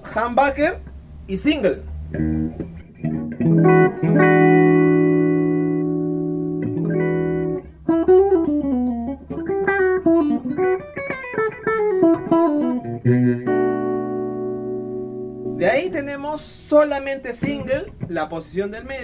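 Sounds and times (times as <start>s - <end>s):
electric guitar lick with bends: 1.8s - 16.2s
electric guitar chord strummed: 1.9s - 16.1s.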